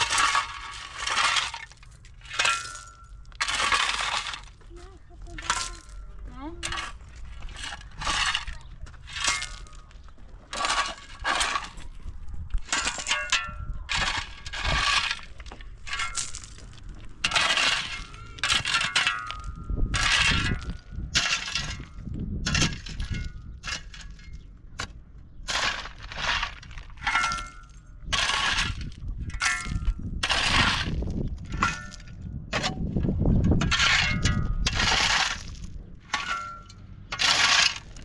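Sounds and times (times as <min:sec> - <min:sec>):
broken shards clinking: 0:00.0 - 0:04.4, 0:33.6 - 0:38.0.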